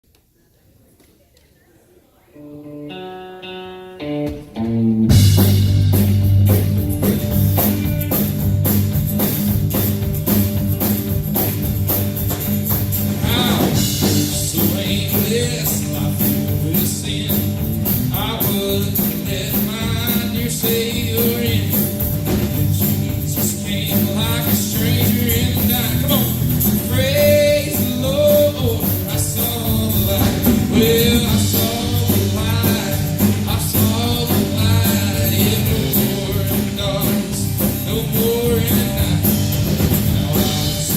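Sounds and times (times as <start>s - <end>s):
band playing drums and guitar: 3.0s - 40.9s
person singing: 13.1s - 40.9s.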